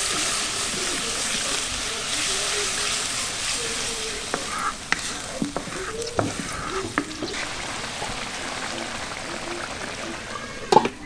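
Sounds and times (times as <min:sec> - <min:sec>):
onion sizzling in hot oil: 0:00.0 - 0:11.0
utensil knocking against pan: 0:04.2 - 0:08.1.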